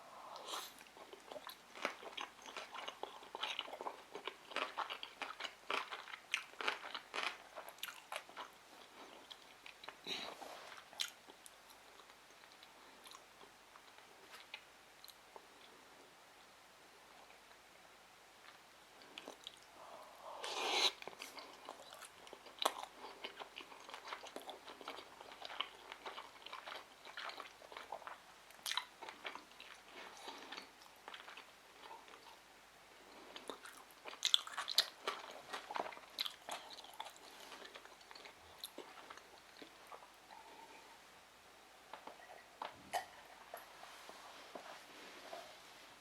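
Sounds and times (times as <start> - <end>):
wet crackly chewing: 0.6 - 15.2, 20.4 - 32.4, 33.3 - 40.6.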